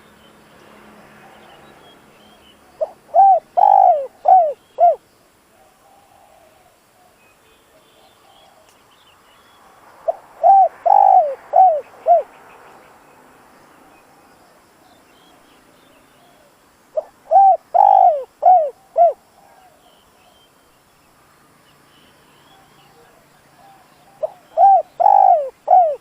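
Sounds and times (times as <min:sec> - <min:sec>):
dove cooing: 0:02.8 - 0:05.0, 0:05.6 - 0:07.1, 0:10.1 - 0:12.3, 0:16.2 - 0:19.9, 0:22.6 - 0:26.0.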